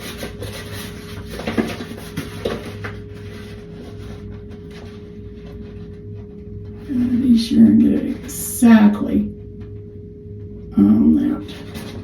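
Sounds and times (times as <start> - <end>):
paper wallpaper rustling: 0.0 - 8.5, 11.2 - 12.0
steady hum: 0.0 - 12.0.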